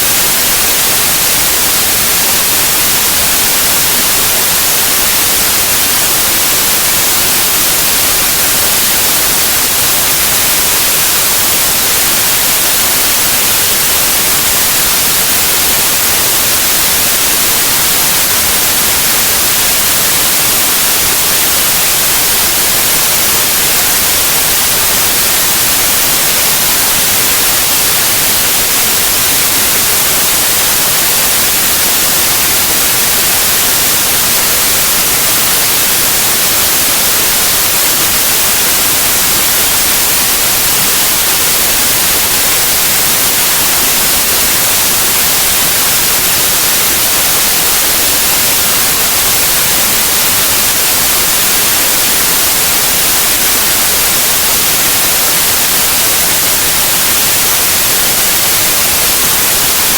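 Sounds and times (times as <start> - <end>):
white noise hiss: 0.0 - 59.9.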